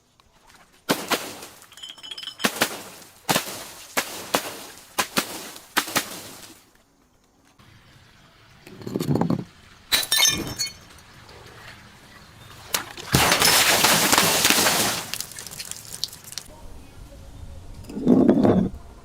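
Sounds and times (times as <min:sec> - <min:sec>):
glass shattering: 0:00.9 - 0:06.5, 0:09.9 - 0:10.9, 0:13.1 - 0:16.5
glass shards clinking: 0:01.4 - 0:03.8, 0:08.7 - 0:10.9, 0:13.1 - 0:16.5.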